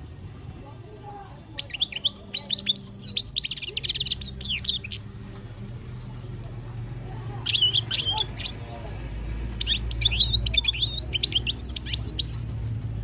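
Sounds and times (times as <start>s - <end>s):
goldfinch twittering song: 1.6s - 5.0s, 7.4s - 12.4s.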